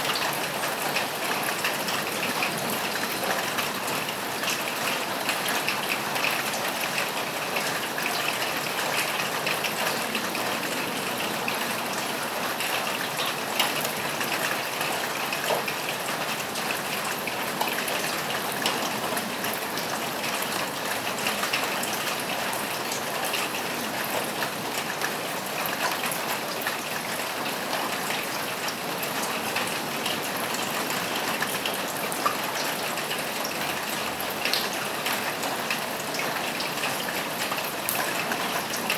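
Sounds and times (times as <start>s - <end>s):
rain falling on a roof: 0.0s - 38.9s.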